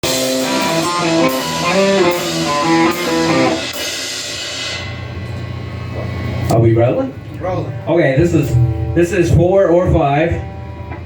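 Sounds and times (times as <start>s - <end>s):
cymbal crash: 0.0s - 6.4s
rock band playing: 0.0s - 6.6s, 7.2s - 11.0s
amplifier hum: 4.8s - 11.0s.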